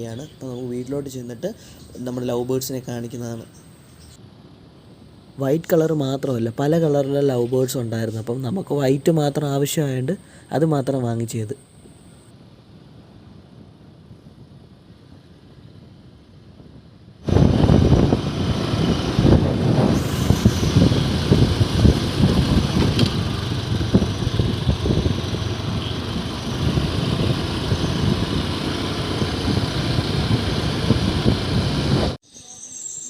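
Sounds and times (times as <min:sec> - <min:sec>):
vehicle moving on road: 0:17.2 - 0:32.2.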